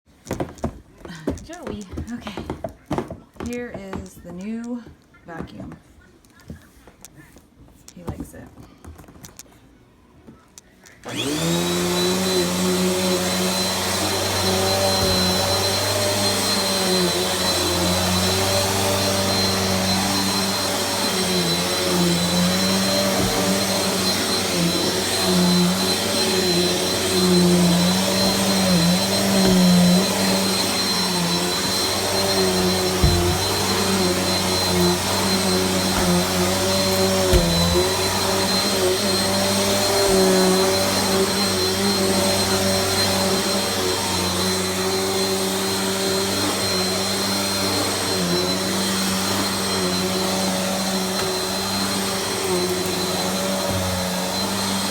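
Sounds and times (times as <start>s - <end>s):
vacuum cleaner running: 11.0s - 54.9s.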